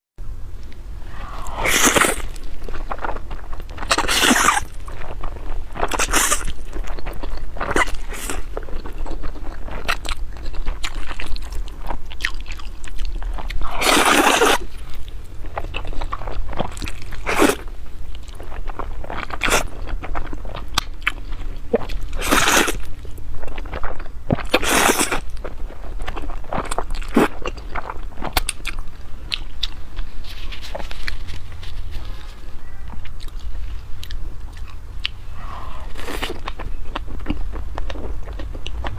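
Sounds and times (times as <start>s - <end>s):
loud crunching bites: 1.1s - 4.8s
wet chewing clicks: 35.8s - 38.9s.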